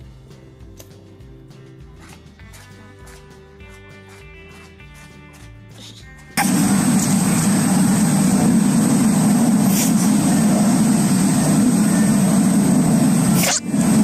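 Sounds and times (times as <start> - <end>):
loud low rumble: 6.4 - 14.0
thin high whine: 6.4 - 14.0.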